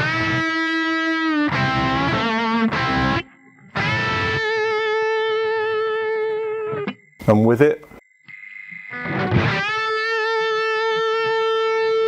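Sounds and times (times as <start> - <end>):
distorted electric guitar: 0.0 - 7.0, 8.3 - 12.0.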